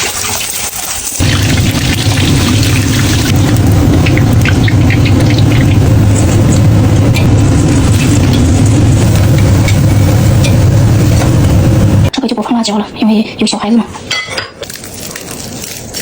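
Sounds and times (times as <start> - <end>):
food crackling in a wok: 0.0 - 12.1, 14.6 - 16.0
range hood fan droning: 1.2 - 12.1.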